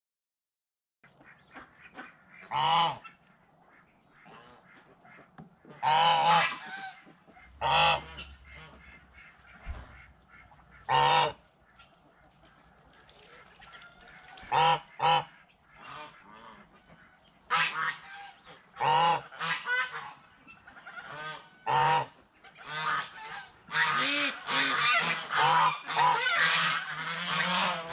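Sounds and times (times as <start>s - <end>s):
geese honking loudly: 1.1s - 27.9s
soft calls from flock: 1.2s - 27.9s.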